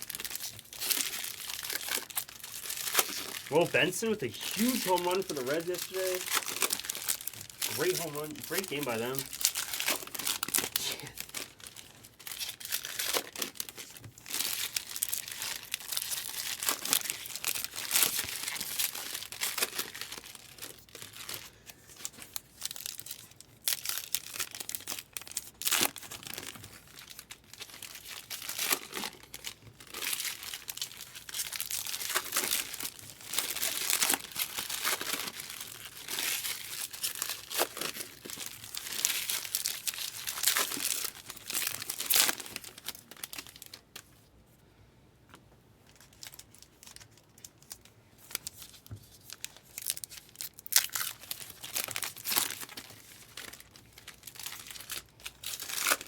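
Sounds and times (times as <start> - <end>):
card wrappers tearing and crinkling: 0.0 - 44.2, 45.9 - 56.0
cards shuffled by hand: 2.9 - 11.2.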